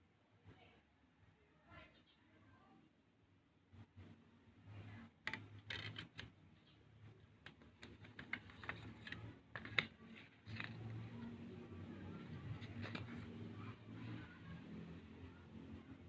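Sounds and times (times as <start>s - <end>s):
paper rustling: 7.7s - 11.3s, 12.1s - 13.4s.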